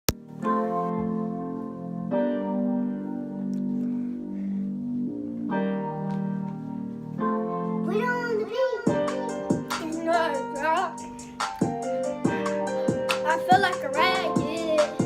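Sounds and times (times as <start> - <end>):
keyboard playing sustained chords: 0.2 - 15.0.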